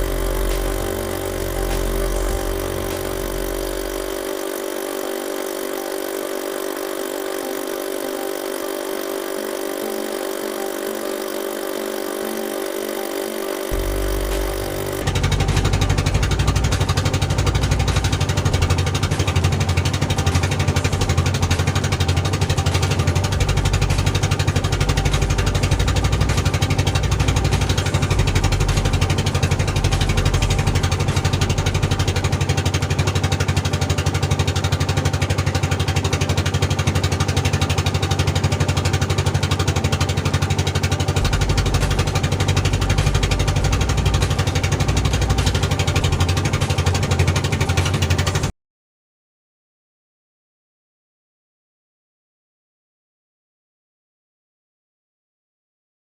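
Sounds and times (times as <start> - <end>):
deep engine rumble: 0.0 - 8.6, 13.3 - 48.5
boat engine running: 0.0 - 48.5.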